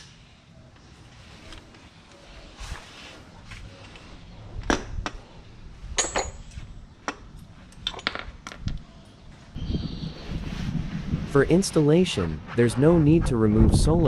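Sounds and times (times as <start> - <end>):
metallic clinks and knocks: 6.0 - 8.8.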